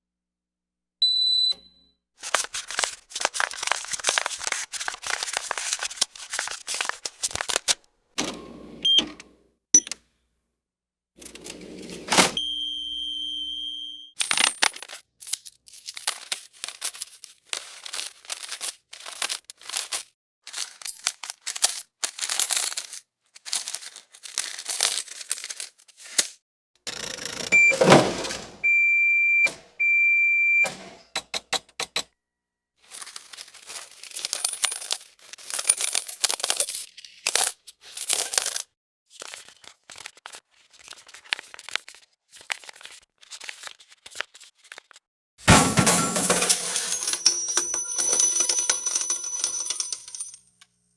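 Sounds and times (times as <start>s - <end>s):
cash rustling and clinking: 2.2s - 7.8s, 14.2s - 26.4s, 32.8s - 50.5s
electronic beeps: 27.6s - 28.0s.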